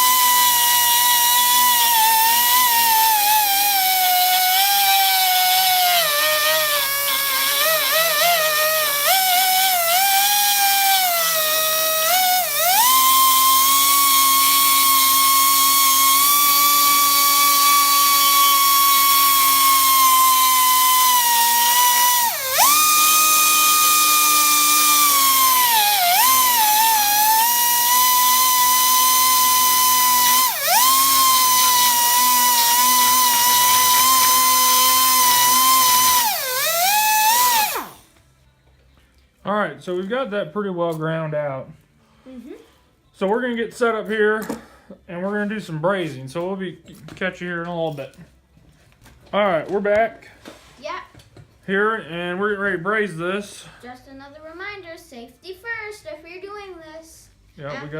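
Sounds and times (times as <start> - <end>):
rotary tool grinding metal: 0.0 - 38.1.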